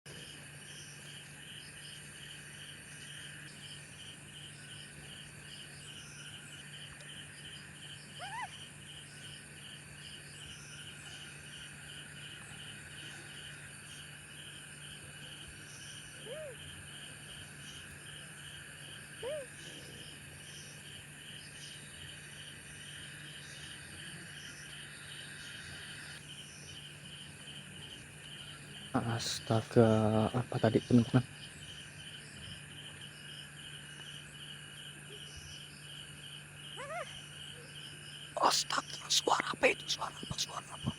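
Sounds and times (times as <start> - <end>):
crickets and insects trilling: 0.1 - 40.9
pulsing insect chirp: 0.1 - 40.9.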